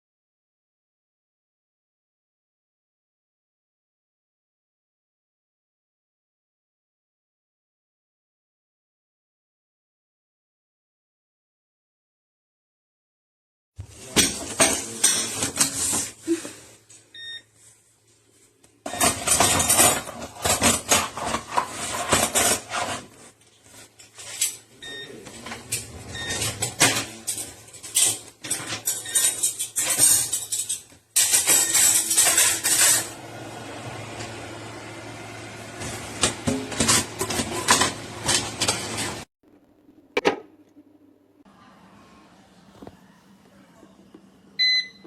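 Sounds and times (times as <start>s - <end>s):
plastic trays clattering: 18.9s - 24.6s
short electronic beeps: 44.6s - 45.0s.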